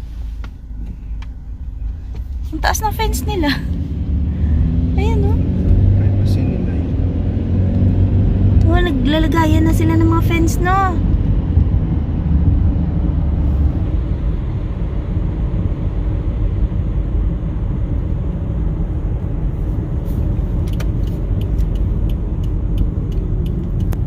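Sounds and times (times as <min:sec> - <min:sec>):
car driving rumble: 0:00.0 - 0:24.0
light regular ticking: 0:20.7 - 0:24.0.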